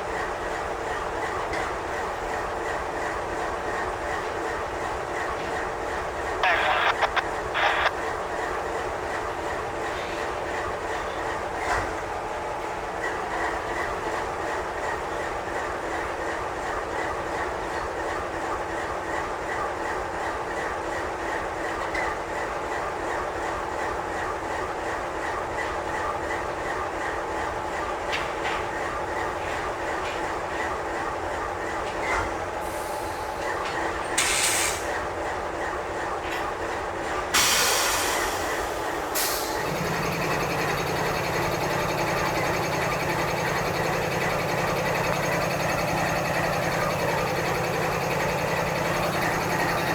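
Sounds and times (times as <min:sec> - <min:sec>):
steel train wheels rumbling on rail: 0:08.2 - 0:49.9
freight train rolling past: 0:37.4 - 0:49.9
wheels clicking over track: 0:39.0 - 0:49.9.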